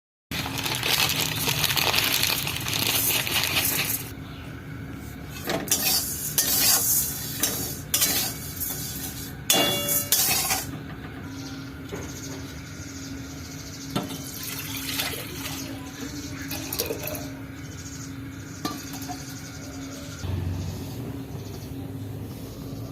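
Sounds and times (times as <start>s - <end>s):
metal spoon scraping a pan: 5.3s - 10.7s
food sizzling in a pan: 5.7s - 9.3s.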